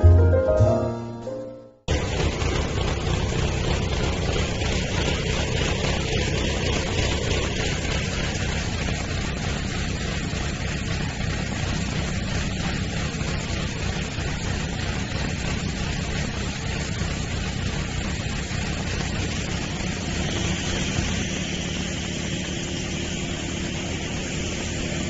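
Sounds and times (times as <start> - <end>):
piano music: 0.0 - 1.9
pressure washer running: 1.9 - 25.0.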